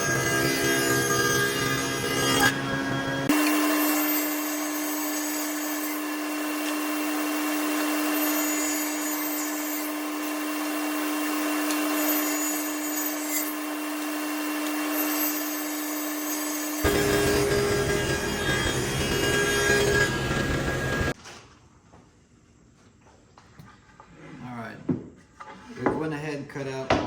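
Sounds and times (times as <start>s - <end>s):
power tool cutting wood: 0.0s - 21.2s.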